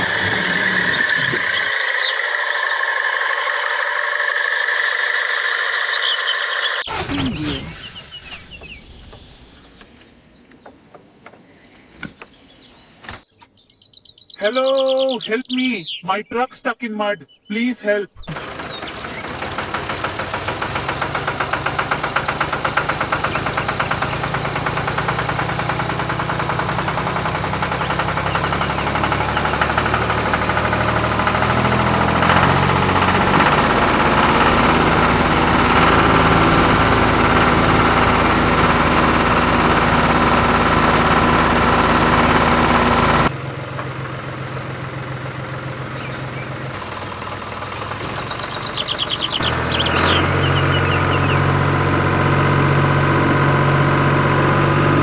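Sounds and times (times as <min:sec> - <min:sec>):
engine running: 0:00.0 - 0:10.0, 0:18.3 - 0:55.0
quieter engine: 0:00.0 - 0:11.4, 0:18.3 - 0:55.0.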